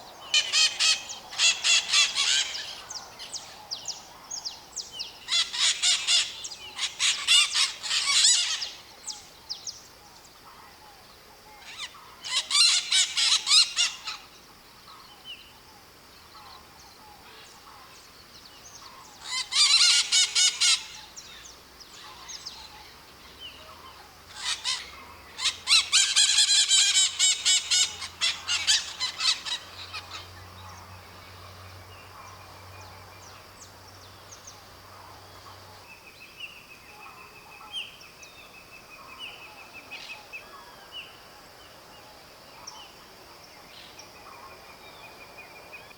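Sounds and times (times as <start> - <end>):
parakeets screeching: 0.4 - 2.8, 5.3 - 8.7, 24.3 - 30.2.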